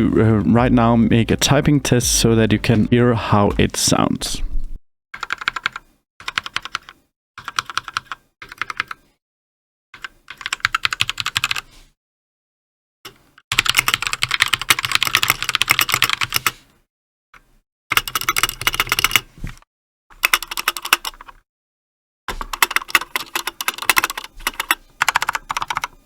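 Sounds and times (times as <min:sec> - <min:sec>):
fast typing on mechanical keyboard: 0:05.2 - 0:09.0, 0:10.0 - 0:11.6, 0:13.5 - 0:16.5, 0:17.9 - 0:19.2, 0:20.2 - 0:21.4, 0:22.3 - 0:26.0.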